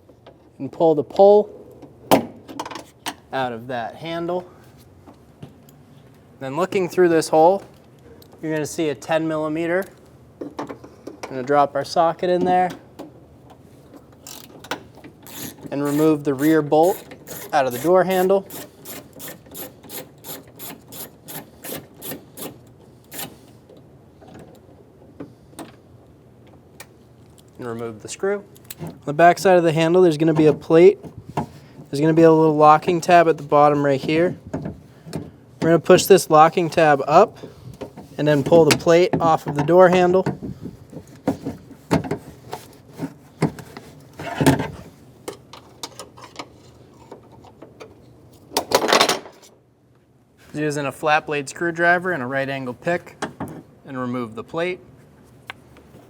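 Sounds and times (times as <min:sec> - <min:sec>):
ratchet clicking: 0:15.2 - 0:16.0, 0:18.5 - 0:23.3.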